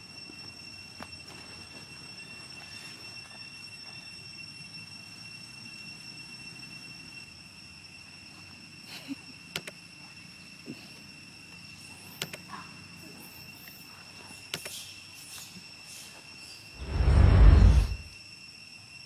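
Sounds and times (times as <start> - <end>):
high-pitched insect drone: 0.0 - 19.0
sharp clicks: 9.6 - 9.8
low rumble: 16.8 - 18.1.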